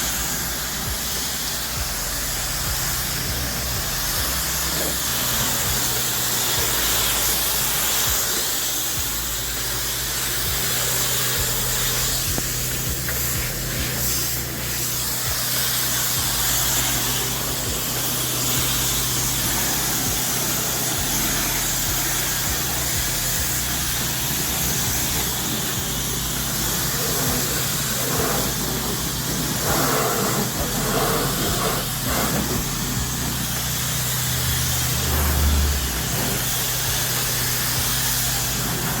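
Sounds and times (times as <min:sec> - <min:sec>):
pressure washer water jet hiss: 0:00.0 - 0:39.0
machine low hum: 0:30.6 - 0:38.4.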